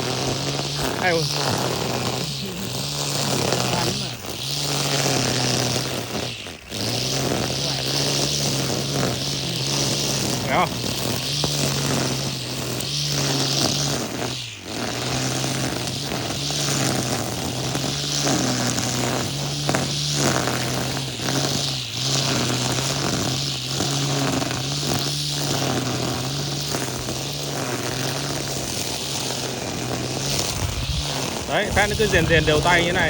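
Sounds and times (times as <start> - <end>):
grass cutter motor hum: 0.0 - 33.0
steady hiss: 15.7 - 33.0.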